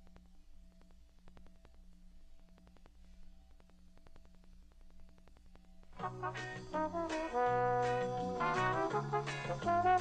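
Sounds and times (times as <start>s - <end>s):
faint low hum: 0.0s - 7.6s.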